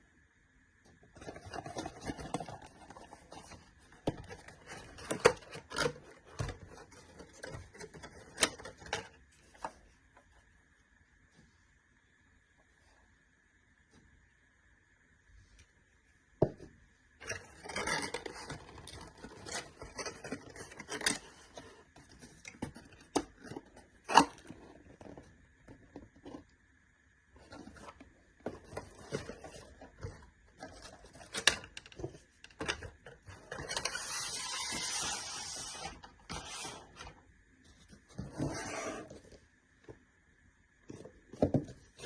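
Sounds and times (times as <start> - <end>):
packaging rustling and scraping: 1.2 - 9.8, 17.2 - 26.4, 27.4 - 39.4.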